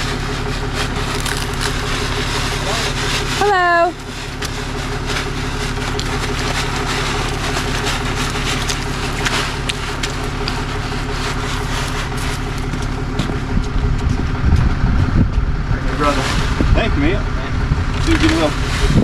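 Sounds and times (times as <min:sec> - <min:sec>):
sharp clicks and crunches: 0:00.0 - 0:14.7, 0:17.9 - 0:19.0
low rumble: 0:00.0 - 0:19.0
vehicle engine idling: 0:00.0 - 0:19.0.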